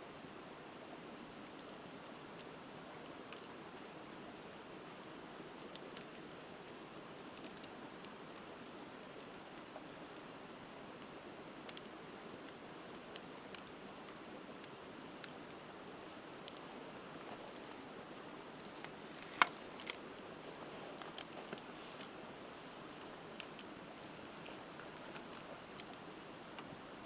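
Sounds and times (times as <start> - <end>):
wood fire crackling: 0.1 - 27.0.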